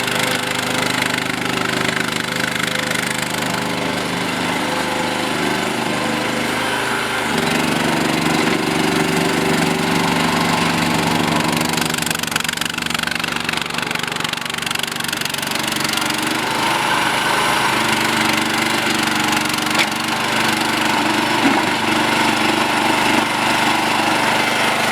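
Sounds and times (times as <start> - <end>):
loader engine running: 0.0 - 24.9
short clunks: 19.6 - 20.0, 21.3 - 22.1.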